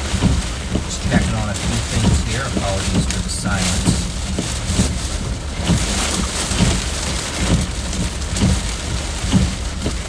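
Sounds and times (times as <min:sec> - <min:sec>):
heavy rain on a vehicle: 0:00.0 - 0:10.0
low rumble: 0:00.8 - 0:05.3.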